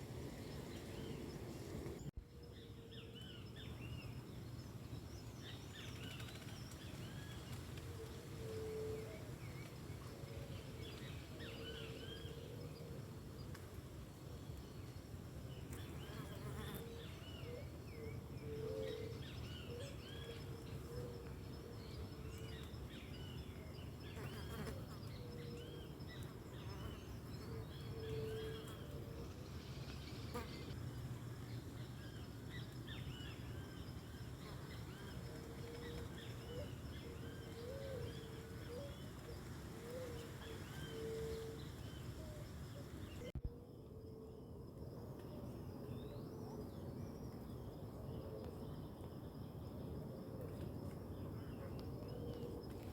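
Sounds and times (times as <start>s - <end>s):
insects humming: 15.5s - 52.9s.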